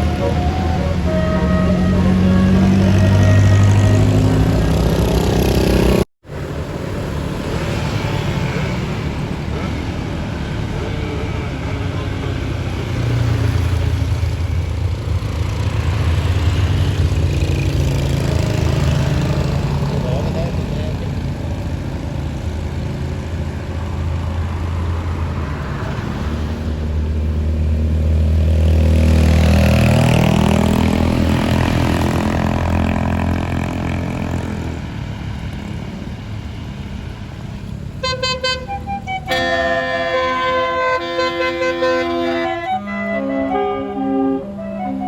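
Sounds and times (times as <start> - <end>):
multi-tone bus horn tune: 0.0 - 6.0, 9.5 - 12.6, 38.0 - 45.0
bus engine running: 0.0 - 45.0.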